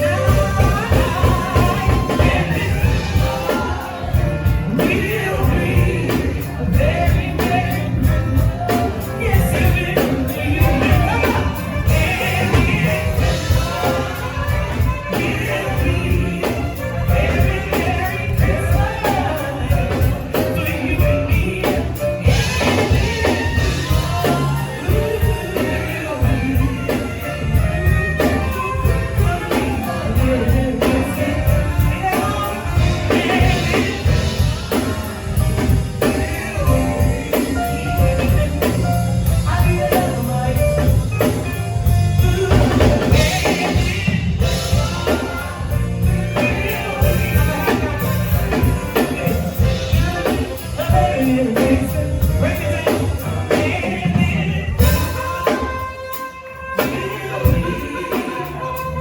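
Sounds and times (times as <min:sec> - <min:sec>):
live band with singer: 0:00.0 - 0:59.0.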